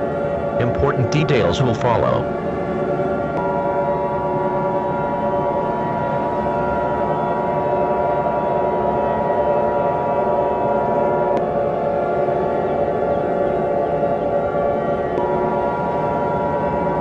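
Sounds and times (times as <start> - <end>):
steady high alert tone: 0.6 - 2.3.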